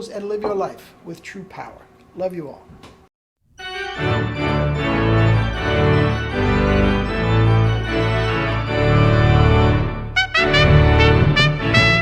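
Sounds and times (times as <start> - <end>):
organ chords over deep bass: 3.6 - 12.0.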